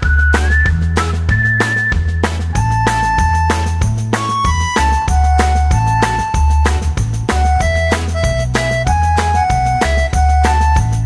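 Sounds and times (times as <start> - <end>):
heavy bass line: 0.0 - 11.0
steady drum beat: 0.0 - 11.0
melody of held notes: 2.5 - 11.0.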